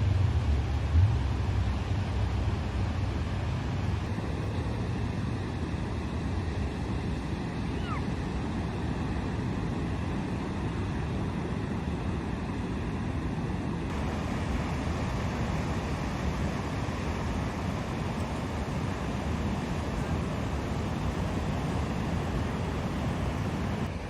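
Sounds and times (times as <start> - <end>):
ocean surf: 1.2 - 24.0
wind buffeting microphone: 13.7 - 23.9.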